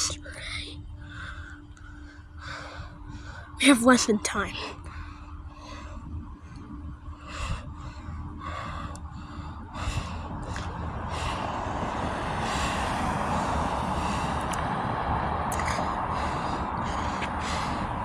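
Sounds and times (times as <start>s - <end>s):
steady rushing noise: 0.0s - 18.0s
breaths close to microphone: 4.7s - 18.0s.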